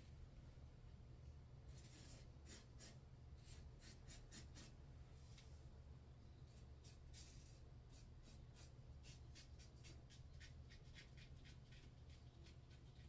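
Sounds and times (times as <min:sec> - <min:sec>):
low steady hum: 0:00.0 - 0:13.0
razor scratching stubble: 0:01.8 - 0:04.7, 0:06.5 - 0:13.0.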